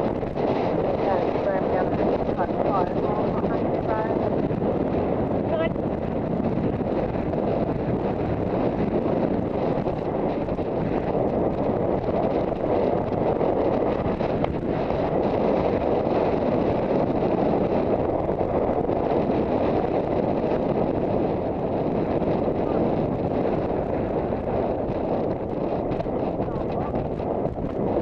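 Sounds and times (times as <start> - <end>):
wind rushing over microphone: 0.0 - 28.0.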